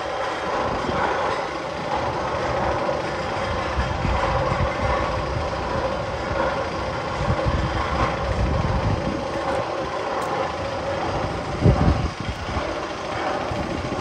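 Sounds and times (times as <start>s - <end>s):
mechanical rumble with hum: 0.0s - 14.0s.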